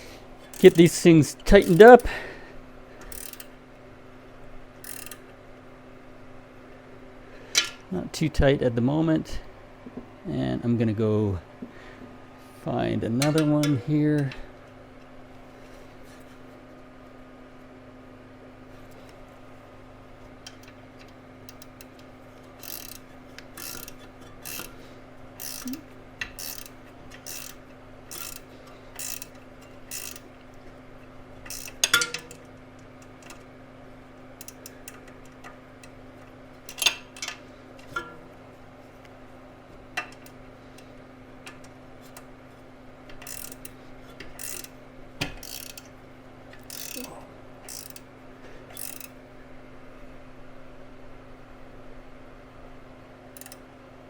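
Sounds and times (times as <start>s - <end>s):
ratcheting wrench clicking: 0.5s - 2.1s, 3.0s - 3.6s, 4.8s - 5.3s, 13.2s - 14.4s, 20.4s - 24.8s, 25.4s - 30.6s, 31.4s - 33.4s, 34.4s - 36.0s, 36.6s - 38.1s, 40.0s - 42.3s, 43.1s - 48.1s, 48.7s - 49.2s, 53.3s - 53.6s.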